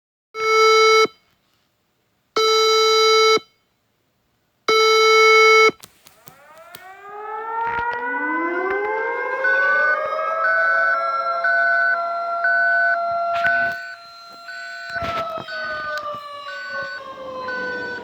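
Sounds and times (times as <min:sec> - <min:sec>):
siren tones winding up: 0:05.6 - 0:18.0.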